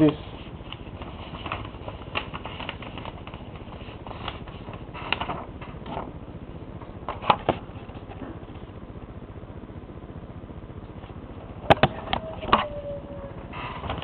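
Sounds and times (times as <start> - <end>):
paper being folded and creased: 0.3 - 6.0.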